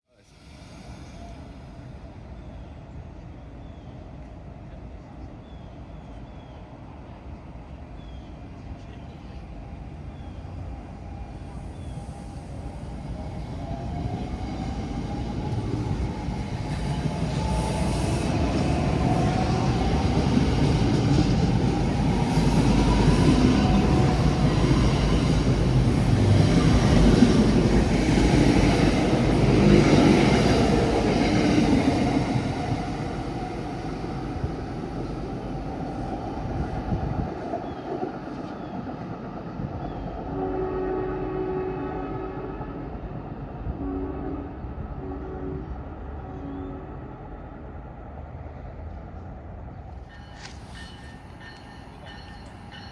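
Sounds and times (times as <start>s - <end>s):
faint train whine: 0.1s - 52.9s
train wheels rumbling on rails: 8.5s - 40.5s, 45.6s - 52.9s.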